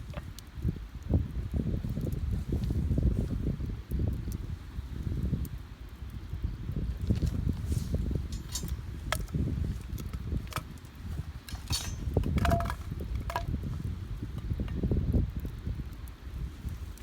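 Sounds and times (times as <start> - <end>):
campfire crackling: 0.0 - 17.0
sharp pops and clinks: 7.1 - 14.8.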